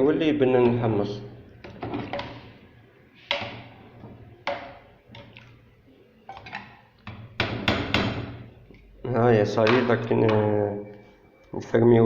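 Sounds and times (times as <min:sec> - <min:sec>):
metal pot and lid clanking: 0:01.6 - 0:02.5, 0:03.3 - 0:05.4, 0:06.3 - 0:08.5.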